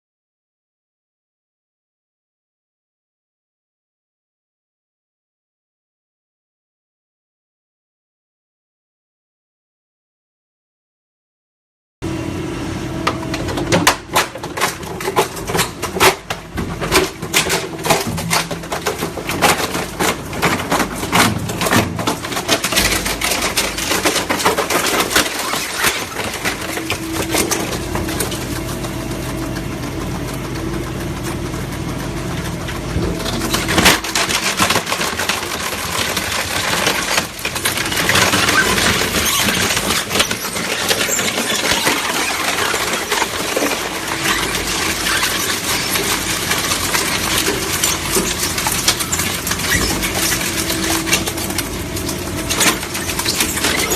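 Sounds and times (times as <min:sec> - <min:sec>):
machine hum: 0:12.0 - 0:53.9
shredder crunching: 0:13.0 - 0:53.9.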